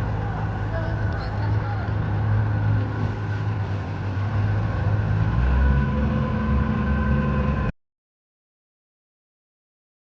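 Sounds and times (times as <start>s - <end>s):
engine humming: 0.0s - 7.7s.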